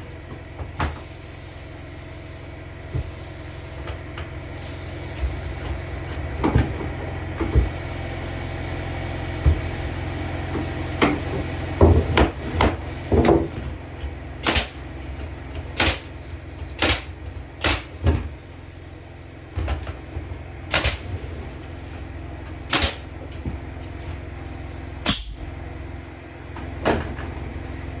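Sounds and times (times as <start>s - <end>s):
steady low hum: 0.0s - 27.8s.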